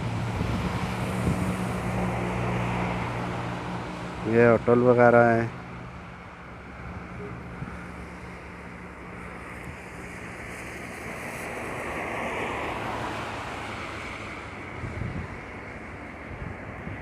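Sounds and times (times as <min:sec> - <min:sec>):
wind on microphone: 0:00.0 - 0:04.2, 0:06.8 - 0:08.4, 0:09.2 - 0:17.0
tyre hiss on wet road: 0:07.6 - 0:14.8.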